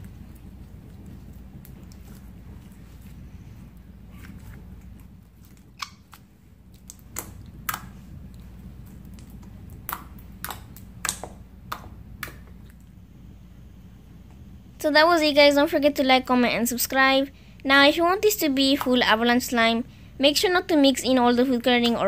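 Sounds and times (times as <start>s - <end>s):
low background hum: 0.0s - 22.0s.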